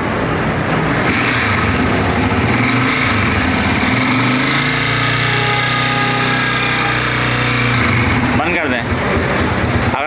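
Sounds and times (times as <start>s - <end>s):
engine cam side noise: 0.0s - 10.0s
motorcycle engine idling: 1.4s - 5.3s, 6.3s - 10.0s.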